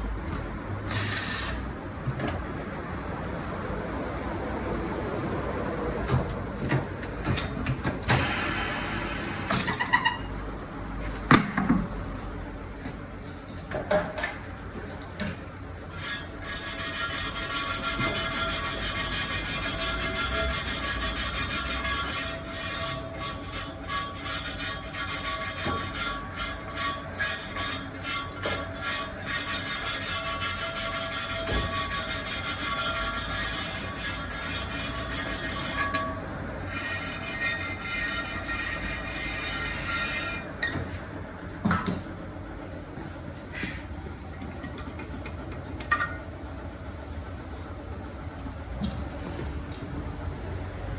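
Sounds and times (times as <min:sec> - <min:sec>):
air hiss: 0:08.1 - 0:09.5
metal clanks and knocks: 0:41.6 - 0:42.3.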